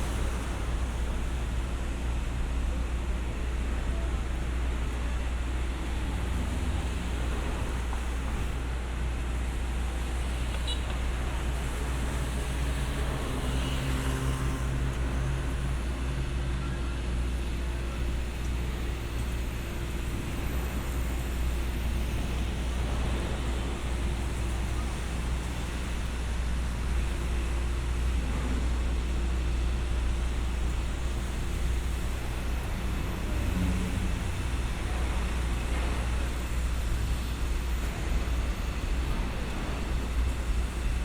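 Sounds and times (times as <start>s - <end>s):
city street traffic: 0.0s - 41.0s
vehicle engine hum: 0.0s - 41.0s.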